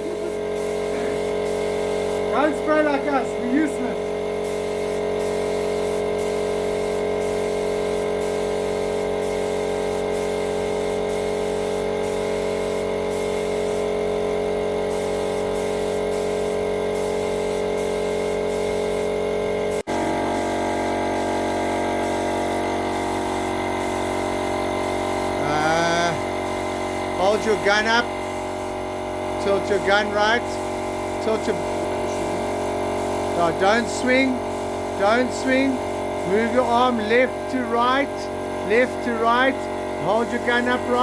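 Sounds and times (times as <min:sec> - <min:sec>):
high spray hiss: 0:00.0 - 0:13.9, 0:14.9 - 0:19.2, 0:19.8 - 0:28.8, 0:29.4 - 0:38.0, 0:38.6 - 0:41.0
machine hum: 0:00.0 - 0:41.0.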